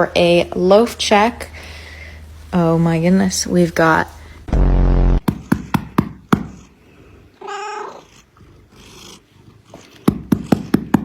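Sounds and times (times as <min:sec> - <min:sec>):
cat meowing: 0:07.4 - 0:08.2.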